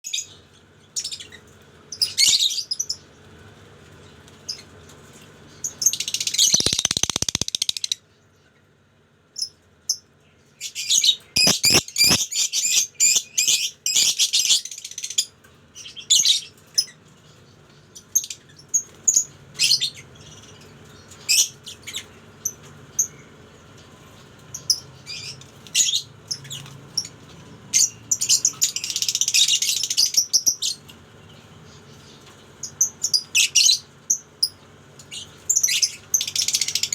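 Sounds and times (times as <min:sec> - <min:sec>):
lovebirds chirping: 0:05.7 - 0:08.0, 0:11.2 - 0:13.4.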